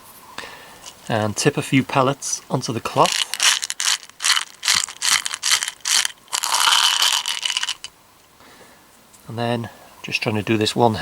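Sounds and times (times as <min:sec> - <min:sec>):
pellets rattling onto cloth: 0:02.7 - 0:07.9.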